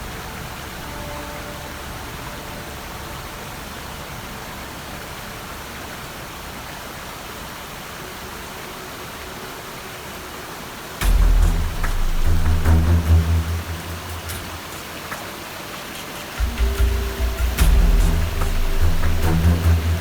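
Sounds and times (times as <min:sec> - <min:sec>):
steady hiss: 0:00.0 - 0:20.0
loud deep boom: 0:11.0 - 0:14.7.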